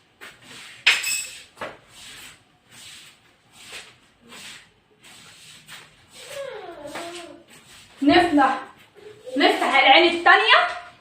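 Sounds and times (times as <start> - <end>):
rubbing and scraping: 1.4 - 9.8.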